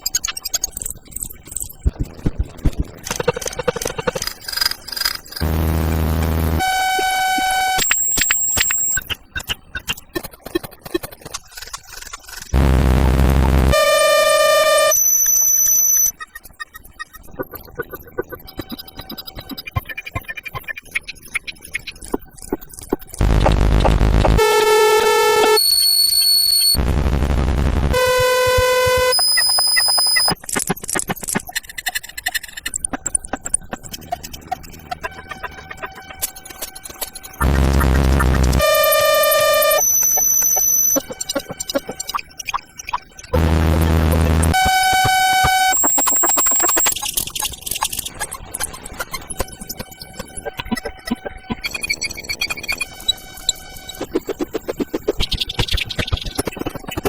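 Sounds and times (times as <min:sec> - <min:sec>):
low buzz: 0:05.4 - 0:08.1, 0:26.8 - 0:29.2
higher electronic tone: 0:05.4 - 0:09.0, 0:12.6 - 0:16.1, 0:23.2 - 0:30.3, 0:37.4 - 0:42.0, 0:43.4 - 0:47.0
steady electronic beep: 0:05.4 - 0:09.1, 0:12.6 - 0:17.2, 0:23.2 - 0:30.4, 0:37.3 - 0:47.1, 0:49.4 - 0:54.2.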